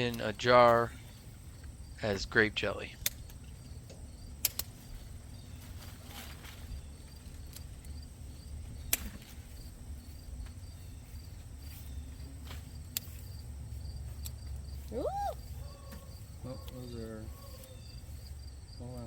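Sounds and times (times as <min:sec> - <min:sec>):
insects chirping: 0:00.0 - 0:19.0
sharp clicks: 0:03.0 - 0:03.4, 0:04.4 - 0:04.7.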